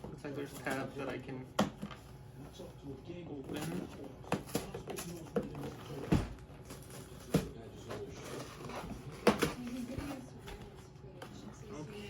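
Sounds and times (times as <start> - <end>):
cardboard rustling: 3.5 - 10.9.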